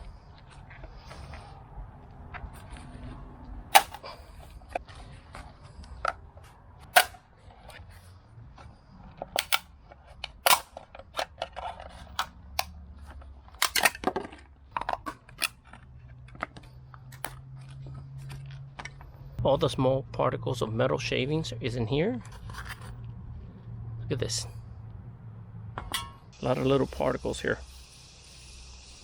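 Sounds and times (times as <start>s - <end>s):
tools clicking and snapping plastic: 3.7s - 4.2s, 6.9s - 7.2s, 9.3s - 12.7s, 13.5s - 15.6s, 17.1s - 17.4s.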